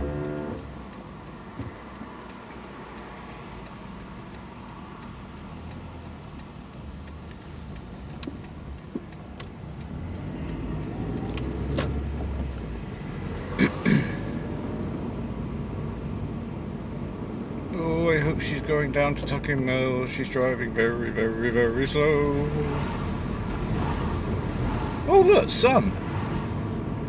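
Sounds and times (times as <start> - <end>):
car engine: 0.0 - 27.0
road noise inside car: 0.0 - 27.0
faint clicks: 0.1 - 12.6.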